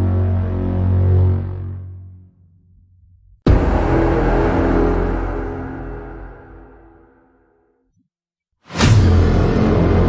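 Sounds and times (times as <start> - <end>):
cinematic braam blast: 3.5 - 7.4.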